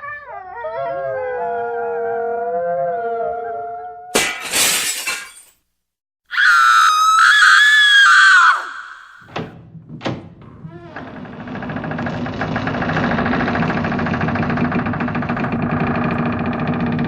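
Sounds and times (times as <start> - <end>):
sustained howl: 0.0 - 4.1
glass shattering: 4.1 - 5.6
high-pitched scream: 6.3 - 9.3.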